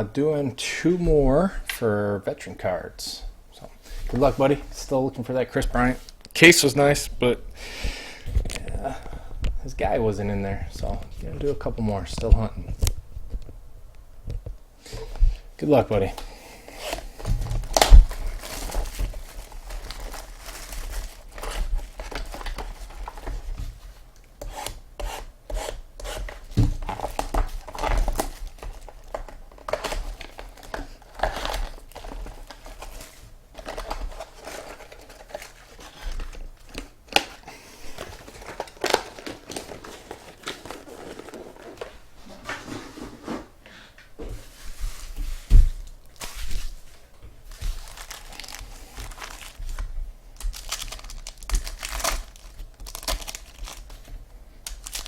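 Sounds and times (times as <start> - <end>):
card wrappers tearing and crinkling: 16.8 - 23.4, 26.3 - 41.9, 47.6 - 49.8, 50.4 - 55.0.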